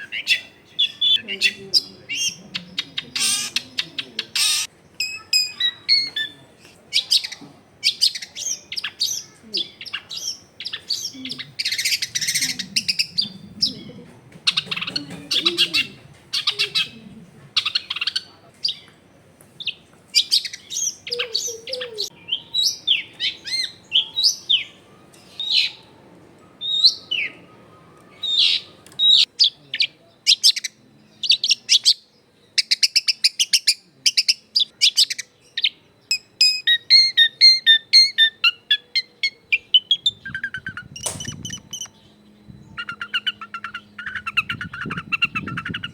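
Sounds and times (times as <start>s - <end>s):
shrike singing chattering song: 0.0s - 18.3s, 28.2s - 45.9s
fast clicking bird notes: 40.6s - 41.9s.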